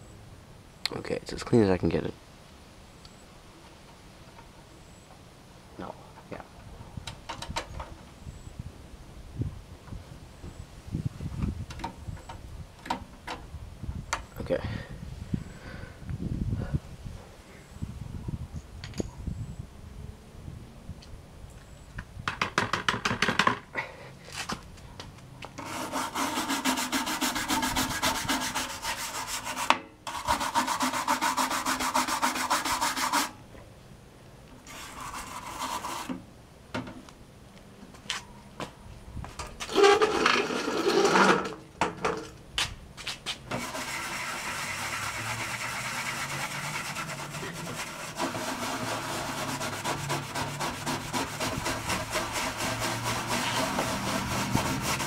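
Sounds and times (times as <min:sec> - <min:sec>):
scrubbing on computer case: 0:43.6 - 0:55.0.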